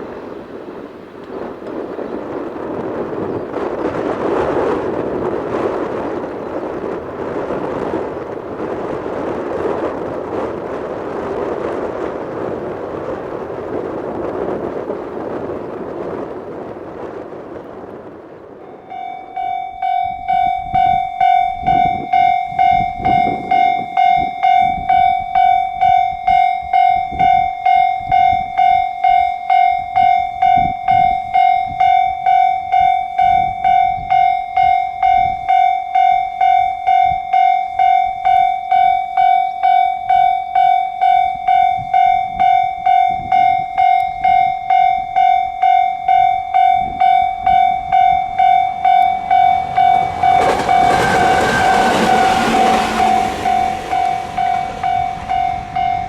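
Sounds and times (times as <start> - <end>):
level crossing warning bell: 18.6 - 56.0.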